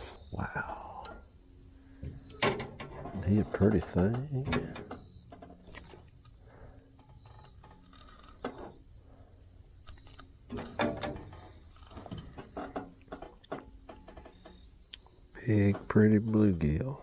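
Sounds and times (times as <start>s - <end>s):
knocks: 2.0s - 3.2s.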